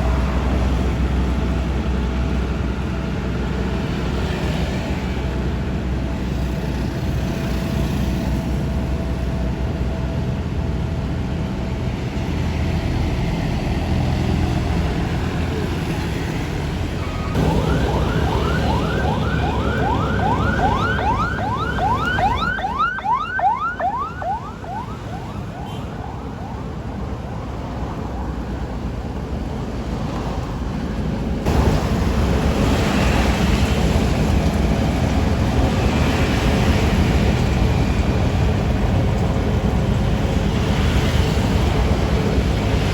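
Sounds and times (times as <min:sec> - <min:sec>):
diesel engines running: 0:00.0 - 0:42.9
siren-like rising tone: 0:17.0 - 0:27.7.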